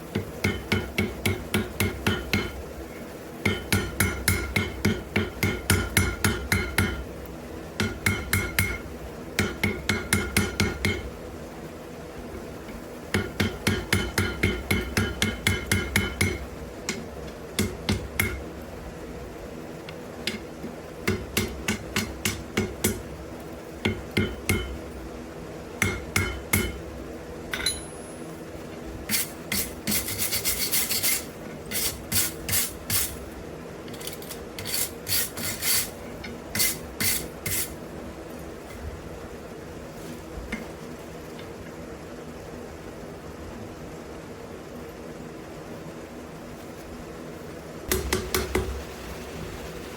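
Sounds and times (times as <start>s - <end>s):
steady low hum: 0.0s - 49.9s
hammer striking iron on anvil: 0.1s - 2.6s, 3.4s - 7.0s, 7.8s - 8.8s, 9.4s - 11.1s, 13.1s - 18.4s, 21.0s - 23.0s, 23.8s - 24.8s, 25.8s - 26.8s, 27.5s - 28.1s, 47.9s - 48.7s
scraping on metal: 33.9s - 36.0s.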